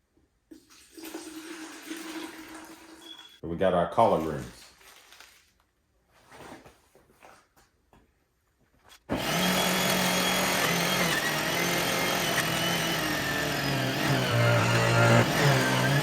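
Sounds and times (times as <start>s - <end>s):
juicer motor whining: 9.1s - 16.0s.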